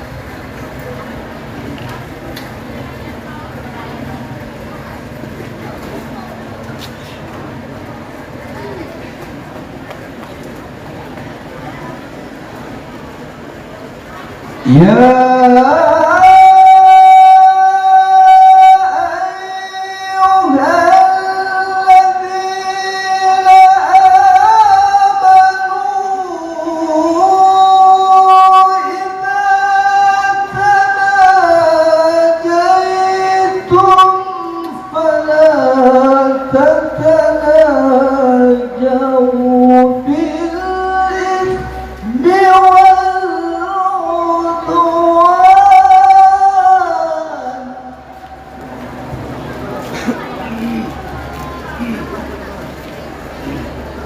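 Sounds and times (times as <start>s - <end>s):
man reciting melodically: 14.6s - 48.6s.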